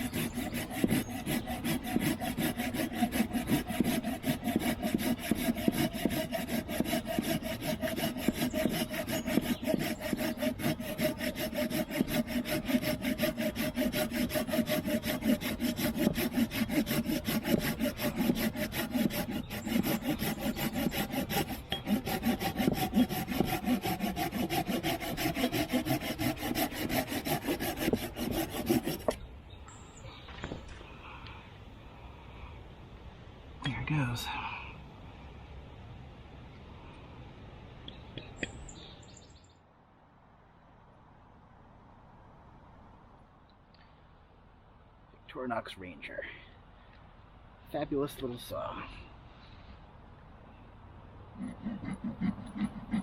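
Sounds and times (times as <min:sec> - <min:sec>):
small saw cutting wood: 0:00.0 - 0:29.2, 0:51.4 - 0:53.0.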